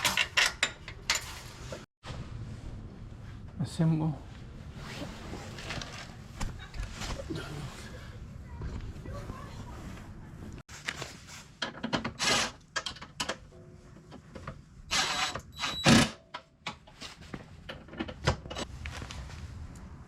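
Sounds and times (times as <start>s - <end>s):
parts clicking and rattling: 0.0s - 1.9s.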